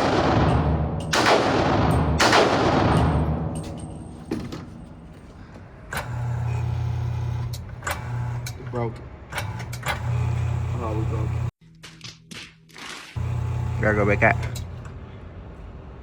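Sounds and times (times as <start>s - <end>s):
gunshots echoing: 0.0s - 4.1s
steady low hum: 0.0s - 11.6s, 13.2s - 16.0s.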